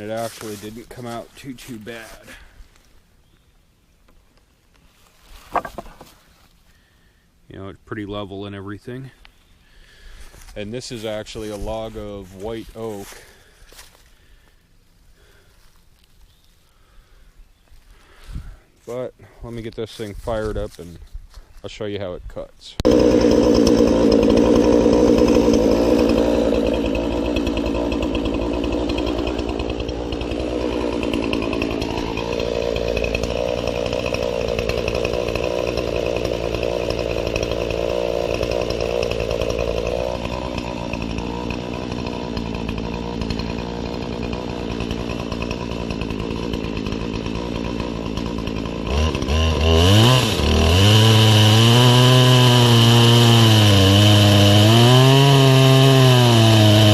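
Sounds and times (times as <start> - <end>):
chainsaw running and revving: 22.8 - 56.9.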